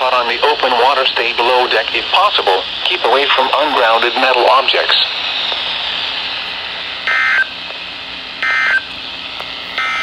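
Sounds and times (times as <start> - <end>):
radio hiss: 0.0 - 10.0
digital data tone bursts: 7.1 - 7.5, 8.4 - 8.9, 9.8 - 10.0.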